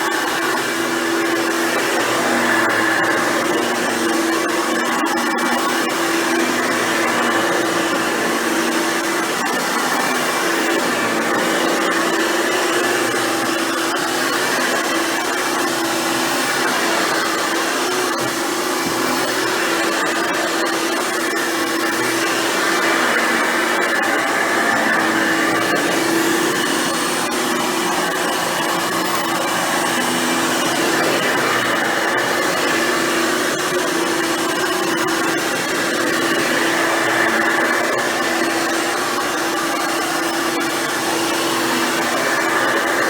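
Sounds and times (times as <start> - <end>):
vacuum cleaner running: 0.0 - 43.0.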